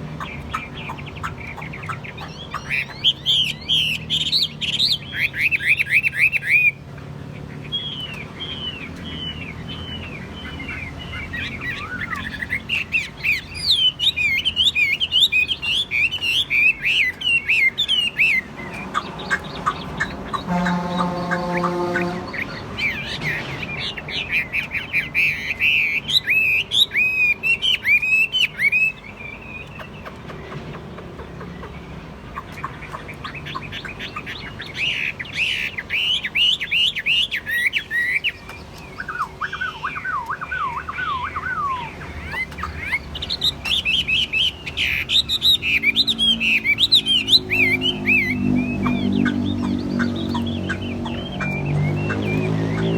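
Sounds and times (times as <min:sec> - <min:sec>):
songbird whistling phrases: 0:34.0 - 0:52.9.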